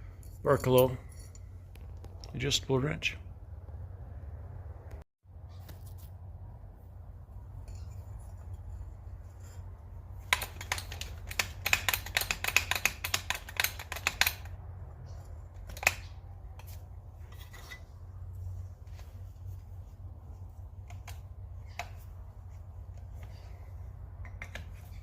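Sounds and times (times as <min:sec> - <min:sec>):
metal wrench clicks and taps: 0:10.3 - 0:14.5.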